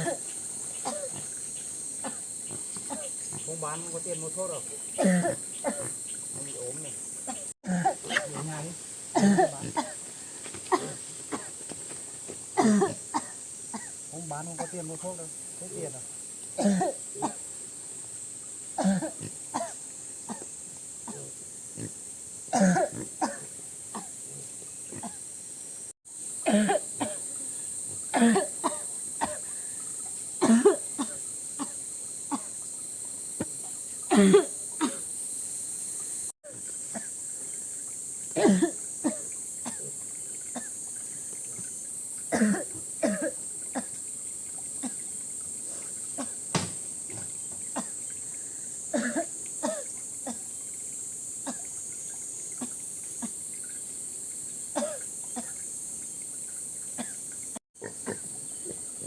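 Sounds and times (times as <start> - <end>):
woman coughing: 0.0 - 0.2, 0.8 - 1.2, 2.9 - 3.1, 5.0 - 5.9, 9.2 - 10.0, 10.7 - 11.5, 12.6 - 13.9, 16.6 - 17.4, 18.8 - 20.4, 22.6 - 23.4, 26.4 - 27.2, 28.1 - 29.4, 30.4 - 32.5, 34.1 - 35.0, 38.4 - 39.8, 42.3 - 43.9, 48.9 - 50.4, 54.8 - 55.5.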